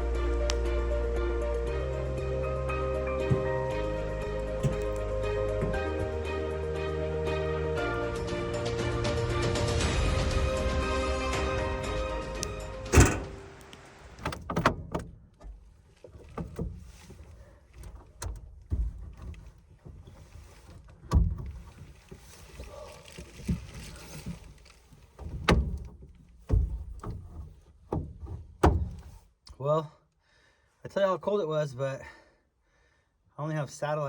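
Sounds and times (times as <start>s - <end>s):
irregular knocks and thumps: 1.5s - 6.7s, 14.2s - 22.3s, 25.1s - 29.2s
faint rustling: 15.4s - 29.4s.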